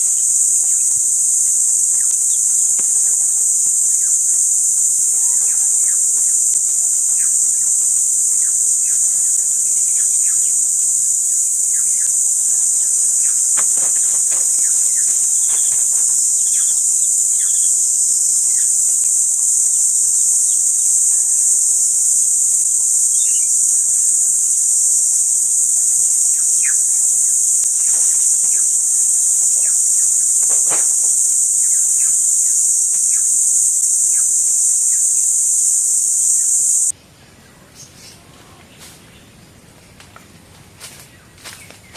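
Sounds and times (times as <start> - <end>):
insects chorus: 0.0 - 37.0
bird chirps: 11.6 - 17.8.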